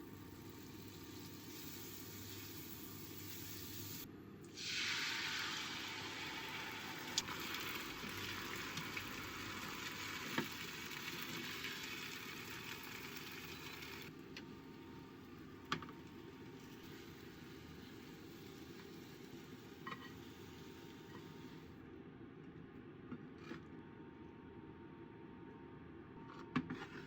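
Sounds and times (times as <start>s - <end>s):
food sizzling in frying pan: 0.0s - 14.1s.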